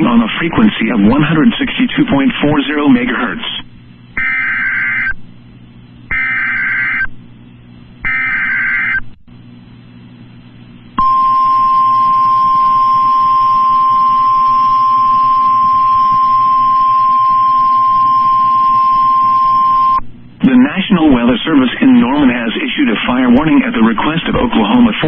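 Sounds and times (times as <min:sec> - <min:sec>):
steady alarm tone: 0:04.2 - 0:05.2, 0:06.1 - 0:07.1, 0:08.0 - 0:09.0, 0:11.0 - 0:20.0
buzzy data bursts: 0:06.1 - 0:07.1, 0:08.0 - 0:09.0.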